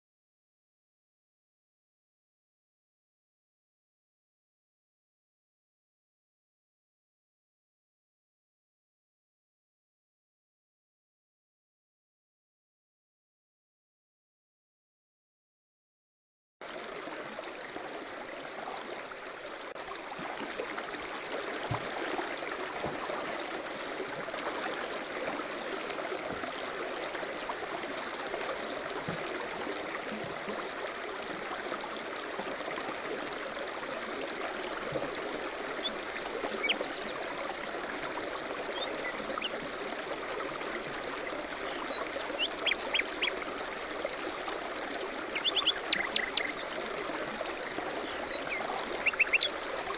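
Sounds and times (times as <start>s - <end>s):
babbling stream: 16.6s - 49.9s.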